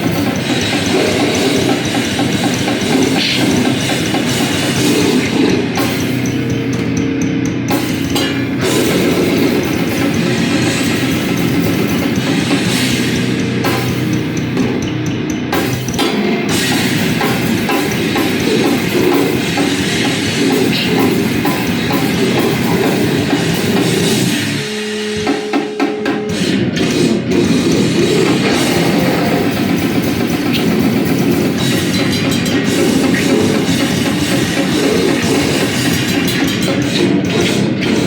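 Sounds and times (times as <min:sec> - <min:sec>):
heavy rock band playing live: 0:00.0 - 0:38.0.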